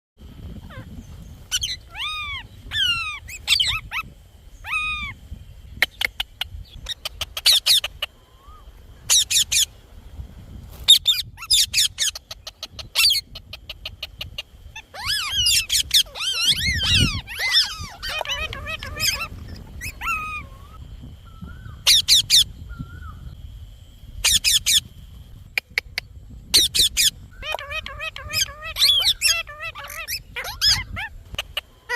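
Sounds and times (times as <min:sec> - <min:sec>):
parrot screeching and chattering: 0:01.5 - 0:04.0, 0:04.6 - 0:05.1, 0:14.8 - 0:20.5, 0:26.6 - 0:31.9
falling whistled calls: 0:14.8 - 0:23.4.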